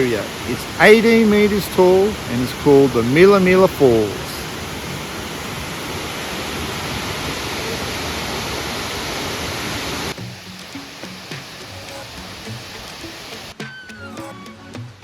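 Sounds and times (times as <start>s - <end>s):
waterfall rushing: 0.0s - 13.6s
background music: 10.2s - 15.0s.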